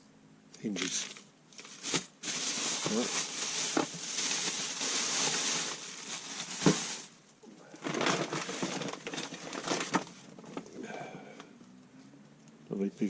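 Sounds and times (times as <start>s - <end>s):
hand tools rustling: 0.8s - 7.2s, 7.8s - 10.6s.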